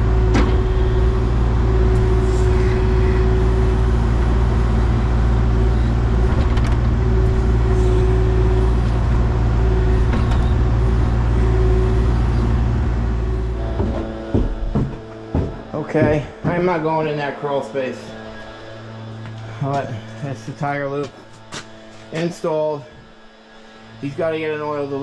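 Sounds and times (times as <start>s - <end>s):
heavy machinery engine running: 0.0s - 25.0s.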